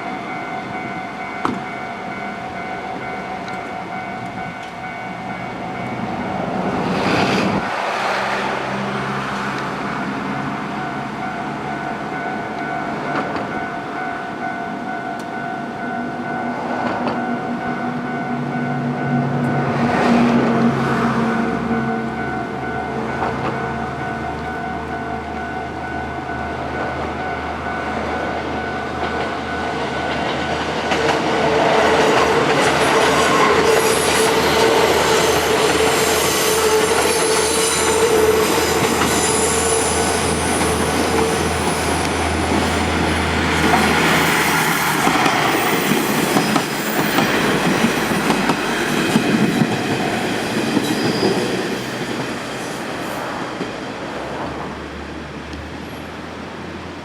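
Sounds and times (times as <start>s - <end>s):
crossing warning bells ringing: 0.0s - 54.0s
wheels squealing: 28.6s - 53.6s.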